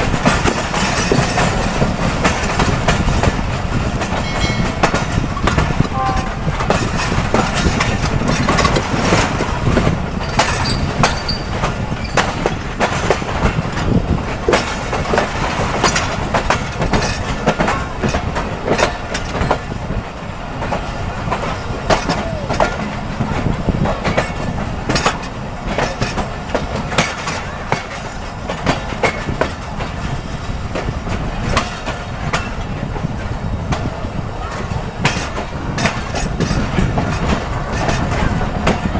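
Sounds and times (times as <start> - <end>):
train wheels rumbling on track: 0.0 - 38.9
metallic clicks from rail joints: 0.2 - 19.7, 23.8 - 30.0, 34.5 - 38.9.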